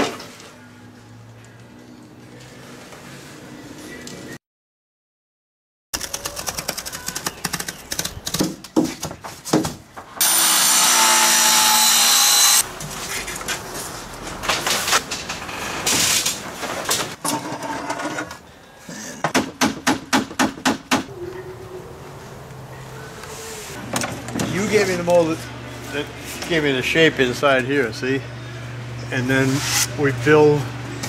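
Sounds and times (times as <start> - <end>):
power tool running: 10.2 - 12.6.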